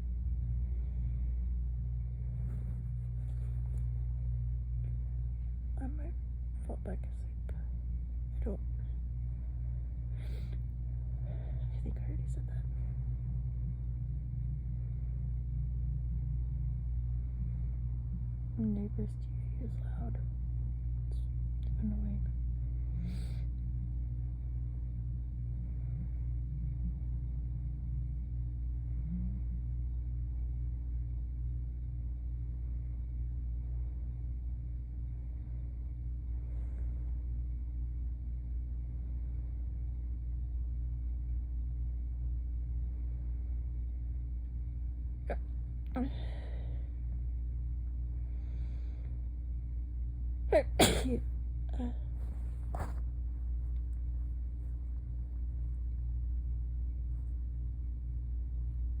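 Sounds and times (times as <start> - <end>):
low rumbling hum: 0.0 - 59.0.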